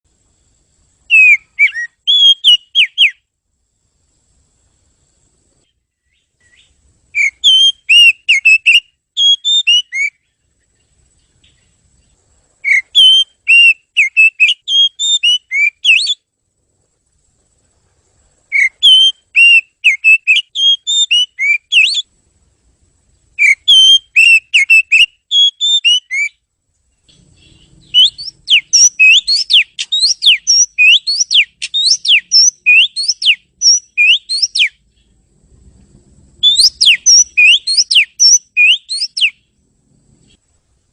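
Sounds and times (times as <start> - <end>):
bird singing whistled notes: 1.0 - 3.3, 5.6 - 16.3, 18.5 - 22.1, 23.2 - 35.2, 36.4 - 39.6.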